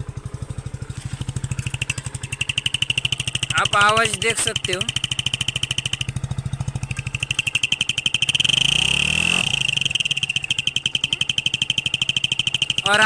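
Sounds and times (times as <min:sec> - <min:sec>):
motorcycle engine running: 0:00.0 - 0:13.0
high exhaust whistle: 0:07.2 - 0:13.0.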